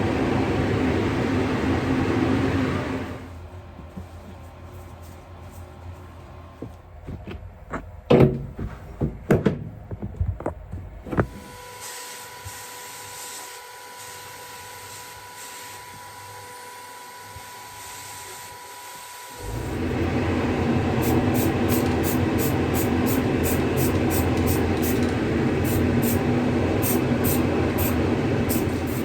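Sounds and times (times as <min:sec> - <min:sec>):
knocks and clunks: 0:07.1 - 0:11.4
steady hum with high tone: 0:19.4 - 0:29.0.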